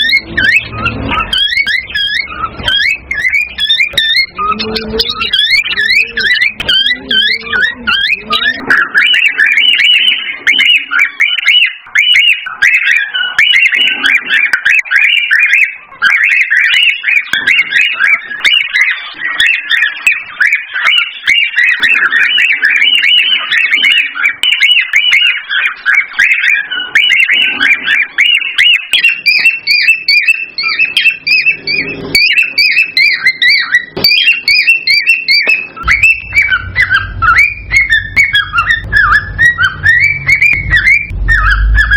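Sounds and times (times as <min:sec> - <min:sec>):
cockatiels chirping and warbling: 0:00.0 - 0:41.9
higher series of bird notes: 0:00.0 - 0:41.9
low rumble: 0:35.9 - 0:41.9.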